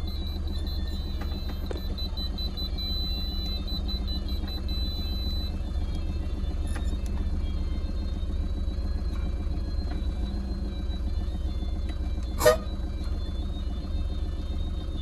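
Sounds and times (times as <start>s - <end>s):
truck engine low rumble: 0.0s - 15.0s
short loud horn blast: 12.4s - 12.8s.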